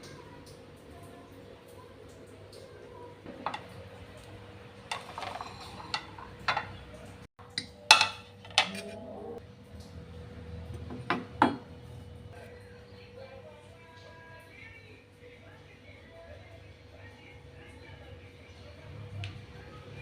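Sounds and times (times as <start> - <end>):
utensils and dishes clinking: 3.3 - 9.4.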